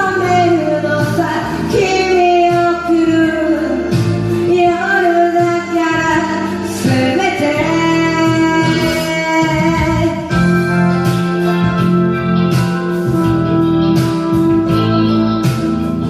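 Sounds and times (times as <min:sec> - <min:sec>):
woman singing pop ballad: 0:00.0 - 0:12.8
backing track: 0:00.0 - 0:16.0.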